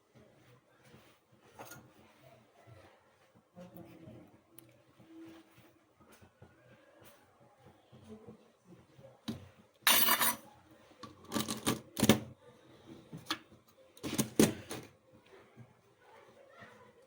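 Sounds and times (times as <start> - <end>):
kitchen containers rattling: 9.9 - 10.5, 11.1 - 12.3.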